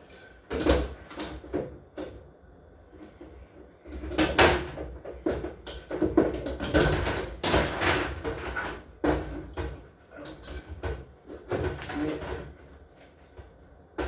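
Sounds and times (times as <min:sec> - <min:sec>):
objects knocking and clattering: 0:03.1 - 0:12.8.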